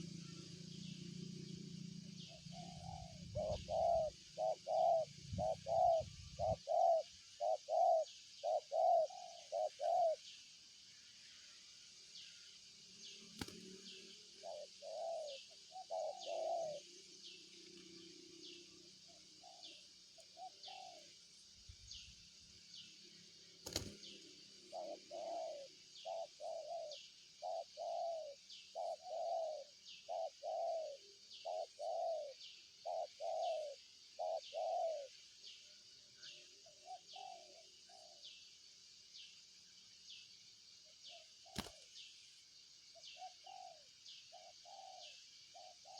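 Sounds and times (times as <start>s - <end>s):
dove cooing: 2.1s - 10.2s, 13.4s - 17.0s, 19.1s - 21.1s, 24.6s - 35.1s, 36.4s - 38.3s, 43.1s - 45.9s.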